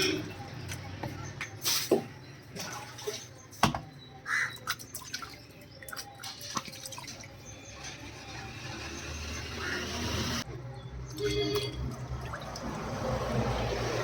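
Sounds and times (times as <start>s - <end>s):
water dripping and splashing: 1.5s - 3.6s, 4.4s - 7.6s, 11.0s - 14.0s.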